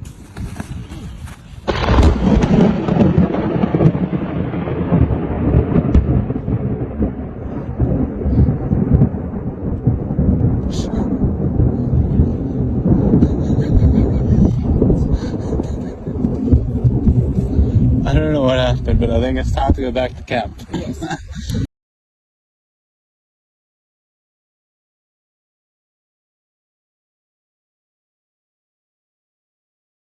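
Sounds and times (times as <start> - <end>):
thunder crack and rumble: 1.6 - 21.7.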